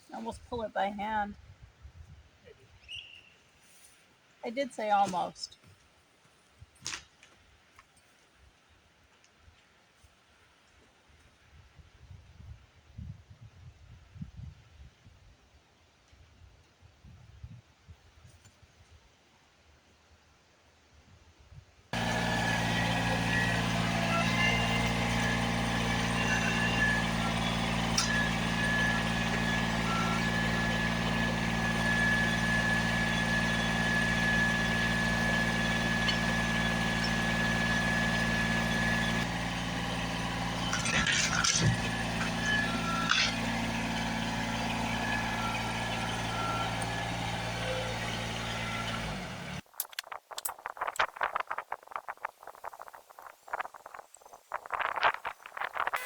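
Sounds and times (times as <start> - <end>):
vehicle engine running: 22.0 - 49.6
clicks and rattles: 39.9 - 44.0.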